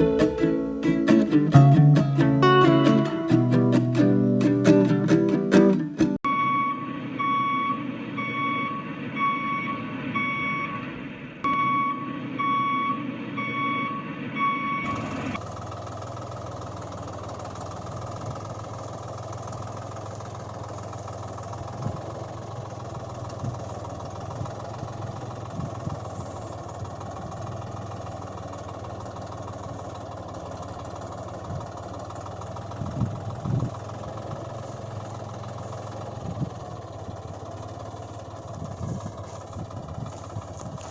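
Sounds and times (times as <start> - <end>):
vehicle engine idling: 0.0 - 40.9
vehicle reversing alarm beeping: 6.2 - 15.4.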